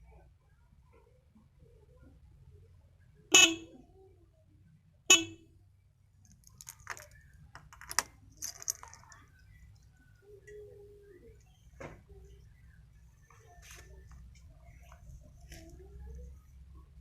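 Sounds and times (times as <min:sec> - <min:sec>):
motorcycle horn beeps: 0:03.3 - 0:03.8, 0:05.1 - 0:05.4
handling clicks and rattles: 0:06.3 - 0:09.4.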